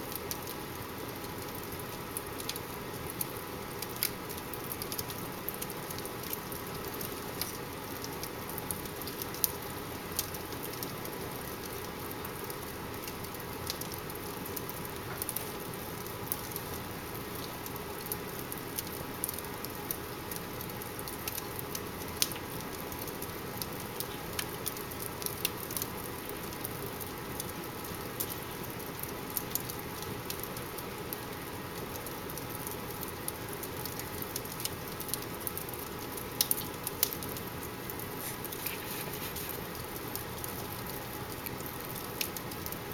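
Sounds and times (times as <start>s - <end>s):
wood fire crackling and popping: 0.0s - 42.9s
fire hissing: 37.9s - 40.6s.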